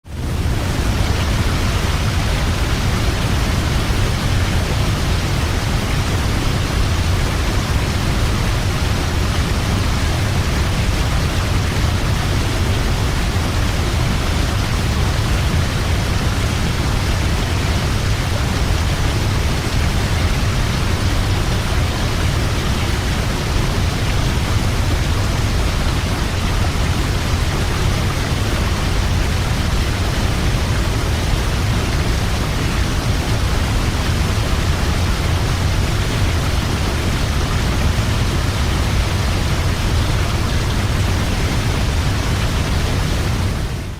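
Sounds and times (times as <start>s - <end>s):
waterfall roaring: 0.1s - 43.9s.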